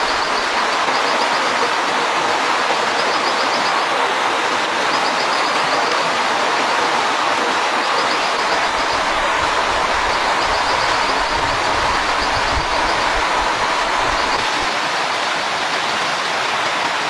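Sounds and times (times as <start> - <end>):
rapid high chirps: 0.0 - 1.7, 7.7 - 14.7
steady rushing hiss: 0.0 - 17.0.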